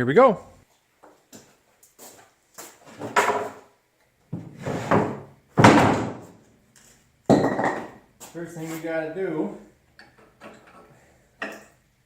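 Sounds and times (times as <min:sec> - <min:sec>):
heavy thuds and knocks: 0:04.4 - 0:06.4.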